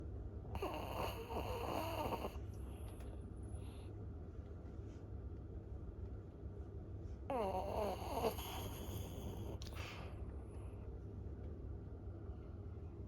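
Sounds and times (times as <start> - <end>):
loud whistly snoring: 0.6 - 2.3, 7.3 - 9.3.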